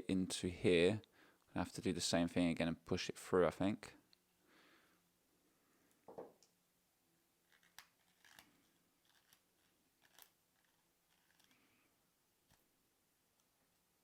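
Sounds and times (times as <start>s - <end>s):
small metal parts clicking: 10.0s - 11.6s.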